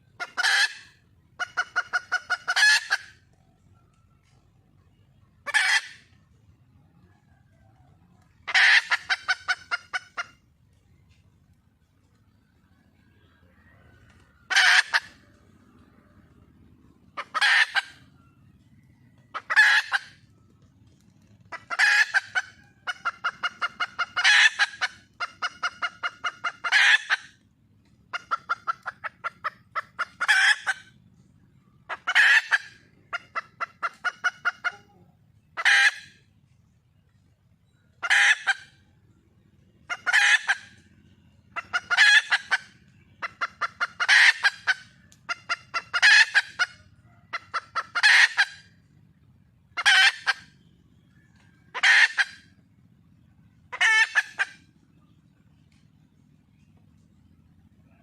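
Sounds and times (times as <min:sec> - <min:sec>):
rapid clucks: 0:00.0 - 0:58.0
hen calling harshly: 0:53.7 - 0:54.5.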